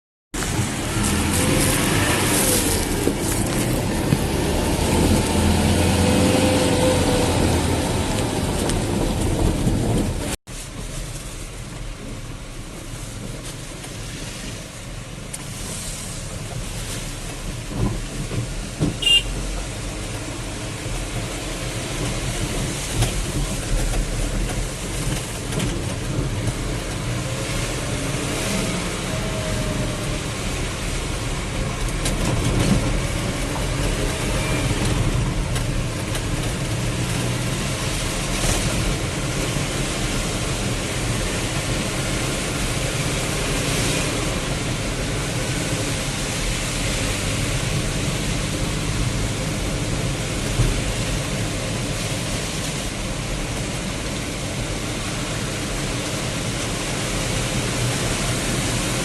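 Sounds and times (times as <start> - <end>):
heavy rain and road noise: 0.4 - 59.0.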